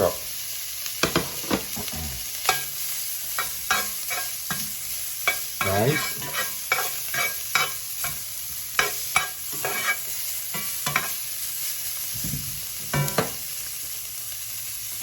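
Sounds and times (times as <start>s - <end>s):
steak sizzling in a pan: 0.0s - 15.0s
utensil scraping a pan: 3.3s - 8.2s, 8.8s - 11.2s.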